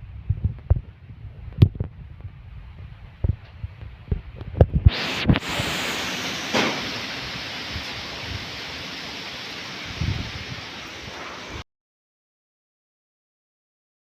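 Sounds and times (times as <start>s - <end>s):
wind buffeting microphone: 0.0s - 6.4s, 7.1s - 8.9s, 9.6s - 11.6s
wind rushing hiss: 0.0s - 11.6s.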